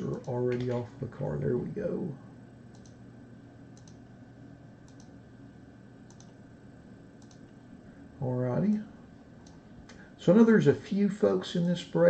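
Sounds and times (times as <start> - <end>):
faint computer clicking: 0.0 - 0.9, 2.7 - 3.1, 3.7 - 4.2, 4.8 - 5.2, 6.0 - 6.4, 7.1 - 7.7, 8.6 - 10.1
low steady hum: 0.0 - 12.0.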